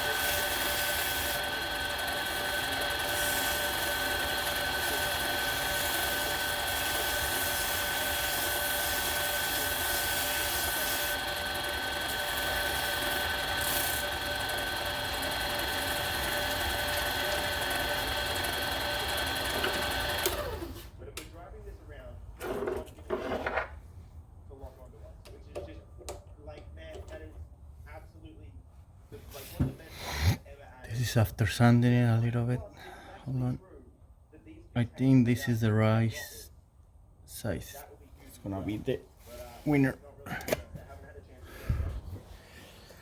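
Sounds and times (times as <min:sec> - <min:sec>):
lathe motor whining: 0:00.0 - 0:20.9.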